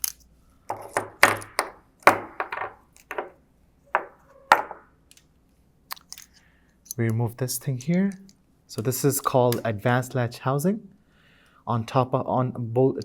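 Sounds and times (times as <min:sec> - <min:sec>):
small parts knocking on workbench: 0:00.0 - 0:03.4, 0:04.0 - 0:04.9.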